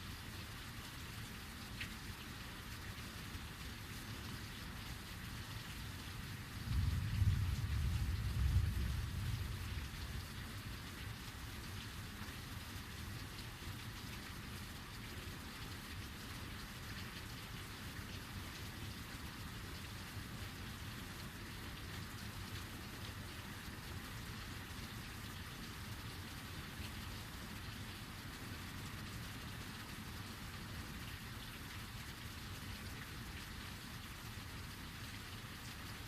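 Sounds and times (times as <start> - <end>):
heavy rain falling: 0.0 - 36.0
low thunder rumble: 6.6 - 10.6.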